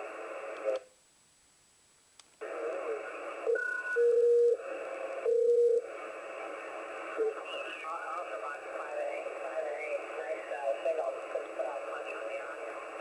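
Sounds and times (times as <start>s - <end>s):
radio band noise: 0.0s - 0.8s, 2.4s - 13.0s
radio click: 0.5s - 0.9s, 8.0s - 8.4s.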